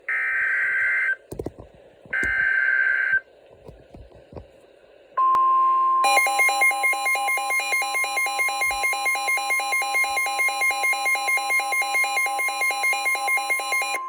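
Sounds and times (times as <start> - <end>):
pulsing multi-tone alarm: 6.0 - 14.0.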